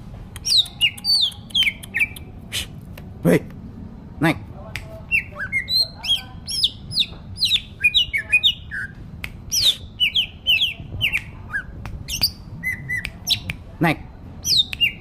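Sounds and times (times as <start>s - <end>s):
songbird chirping: 0.3s - 2.4s, 5.0s - 13.6s, 14.3s - 15.0s.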